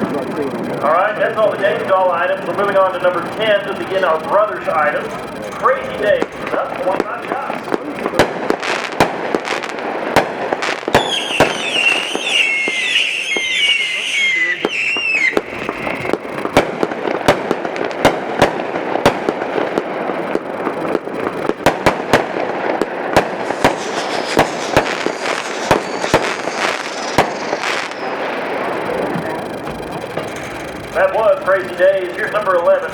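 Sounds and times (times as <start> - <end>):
fireworks crackle: 0.0 - 32.9
fireworks shots and bursts: 0.0 - 32.9
wavering high whistle: 11.0 - 16.2, 23.4 - 28.6.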